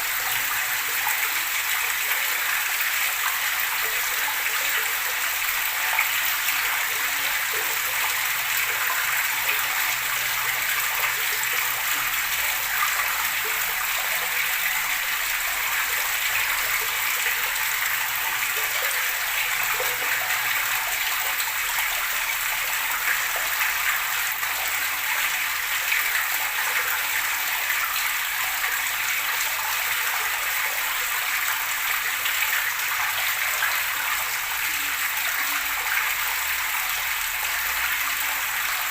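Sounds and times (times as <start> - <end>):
running water gurgling: 0.0 - 38.9.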